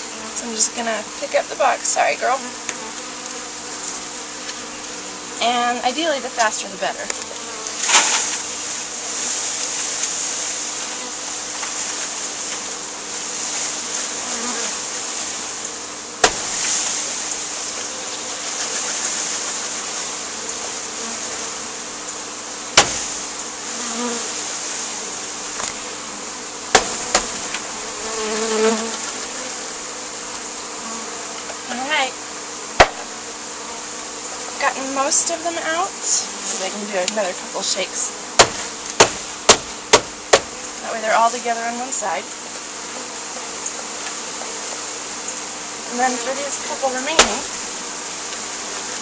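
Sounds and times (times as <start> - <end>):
bees buzzing loudly: 0.0 - 49.0
box knocks: 16.2 - 16.5, 26.8 - 27.4, 38.4 - 40.6.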